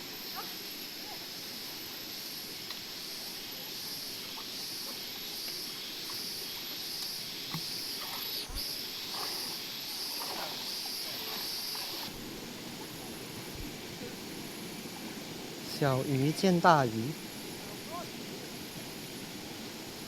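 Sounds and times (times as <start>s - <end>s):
faint scattered ticks: 0.0s - 12.2s
insect chorus buzzing: 0.0s - 20.0s
pulsing high insect layer: 0.0s - 20.0s.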